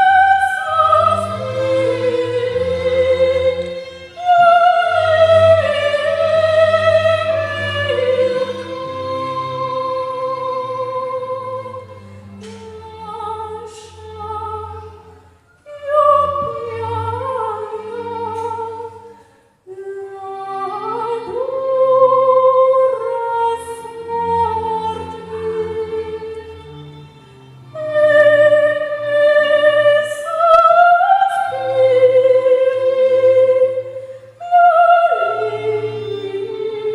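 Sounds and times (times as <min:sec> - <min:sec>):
low musical accompaniment: 0:00.0 - 0:19.2
operatic singing: 0:00.0 - 0:36.9.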